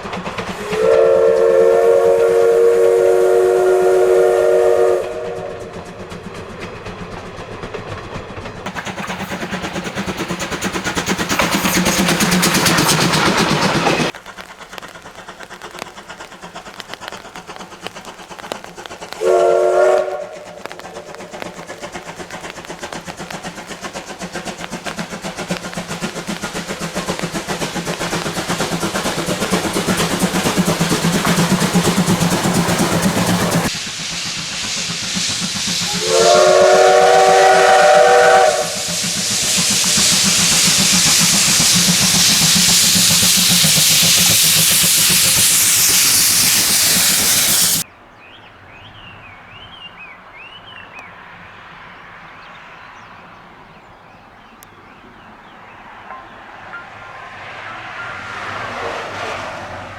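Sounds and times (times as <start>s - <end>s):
train running on rails: 0.0s - 59.9s
steam locomotive whistle: 0.5s - 5.8s, 19.2s - 21.5s, 34.3s - 47.8s.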